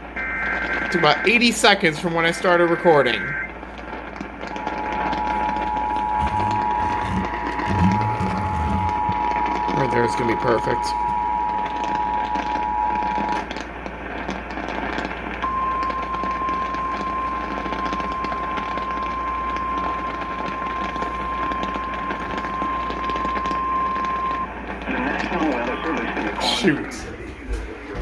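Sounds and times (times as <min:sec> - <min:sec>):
radio static and crackle: 0:00.0 - 0:28.0
steady warning alarm tone: 0:04.5 - 0:13.5, 0:15.4 - 0:24.8
two-tone attention signal: 0:04.6 - 0:13.4, 0:15.5 - 0:24.5.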